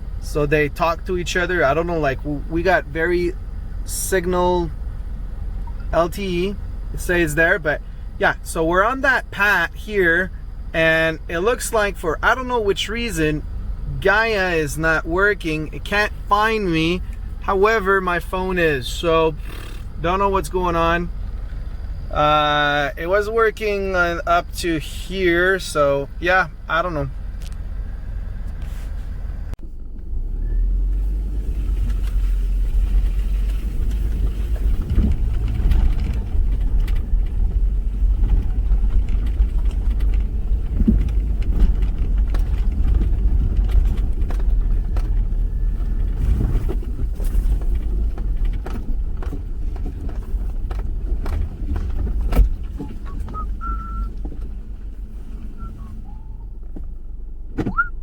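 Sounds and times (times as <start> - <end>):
car engine and tyres rumbling: 0.0 - 58.0
knocks and clicks from bumpy ground: 33.8 - 53.4.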